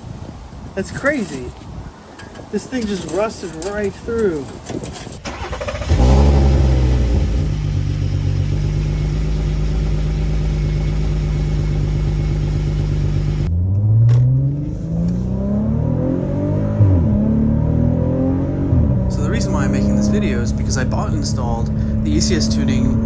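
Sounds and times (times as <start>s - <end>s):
exhaust leaking: 5.1s - 13.5s, 18.7s - 23.0s
car engine idling: 5.2s - 13.5s, 18.6s - 23.0s
car engine revving: 5.3s - 23.0s.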